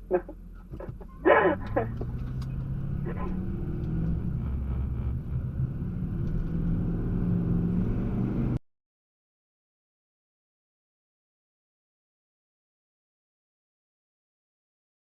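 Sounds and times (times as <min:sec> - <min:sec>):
vehicle engine running: 0:00.0 - 0:08.6.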